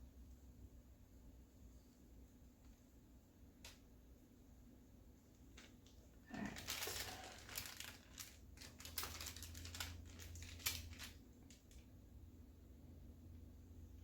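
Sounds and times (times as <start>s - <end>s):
crinkling handling noises: 5.3s - 11.9s.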